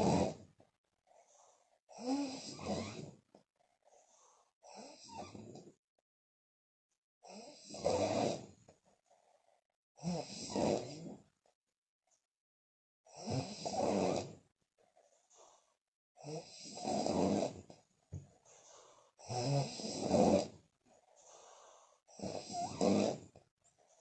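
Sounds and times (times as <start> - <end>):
woman snoring loudly: 0.0 - 0.4, 1.9 - 3.1, 4.7 - 5.6, 7.2 - 8.5, 10.0 - 11.2, 13.1 - 14.4, 16.2 - 17.7, 19.2 - 20.6, 22.1 - 23.4.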